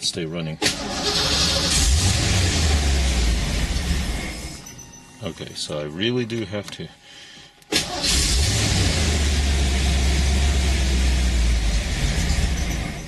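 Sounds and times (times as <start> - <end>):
car engine revving: 0.6 - 4.6, 7.8 - 13.0.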